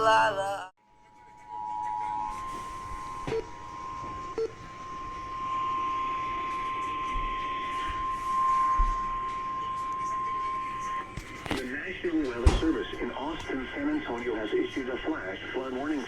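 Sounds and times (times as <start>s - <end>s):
lower two-note tone: 1.1s - 11.2s
high alert beep: 1.8s - 11.1s.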